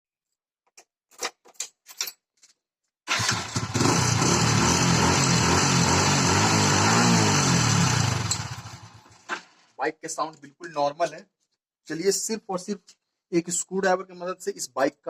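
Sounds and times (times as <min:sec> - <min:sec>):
motorcycle engine starting and idling: 0:03.1 - 0:09.2.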